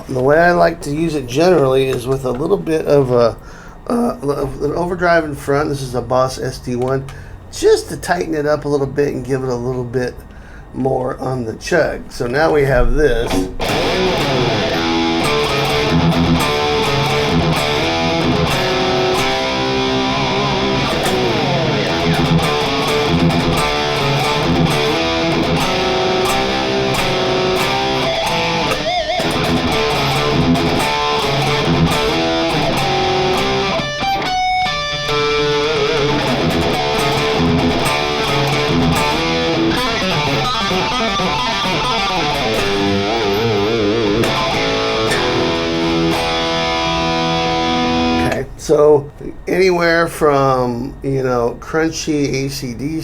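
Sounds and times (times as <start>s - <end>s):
distorted electric guitar metal riffs: 12.2s - 48.6s.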